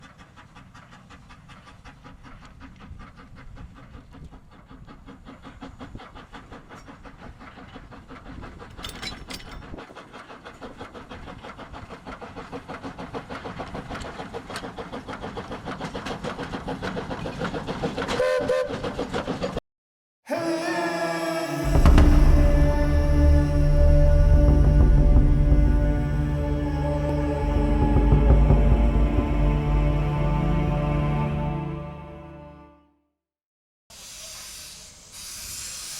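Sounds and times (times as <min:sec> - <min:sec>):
steam locomotive exhaust beats: 0:00.0 - 0:08.8, 0:09.6 - 0:19.2, 0:20.3 - 0:31.7, 0:33.9 - 0:35.9
steam whistle blast: 0:18.2 - 0:18.8, 0:20.3 - 0:28.4, 0:33.9 - 0:35.9.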